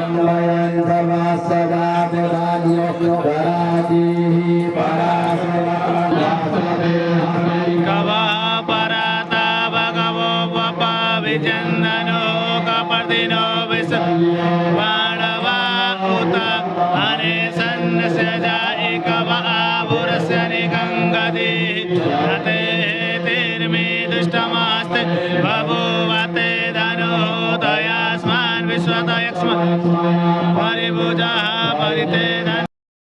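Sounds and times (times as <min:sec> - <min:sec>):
steady low drone: 0:00.0 - 0:08.3
voices chanting mantras: 0:00.0 - 0:32.7.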